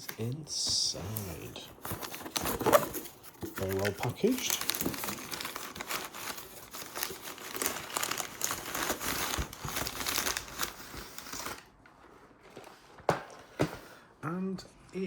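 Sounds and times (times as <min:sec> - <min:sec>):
packaging crinkling and tearing: 0:01.0 - 0:11.8.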